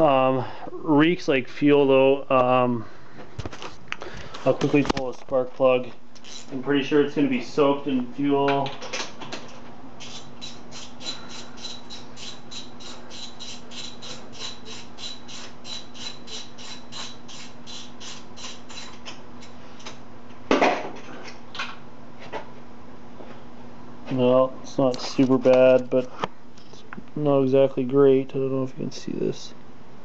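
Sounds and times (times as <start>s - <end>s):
ratchet wrench clicking: 10.0s - 19.0s.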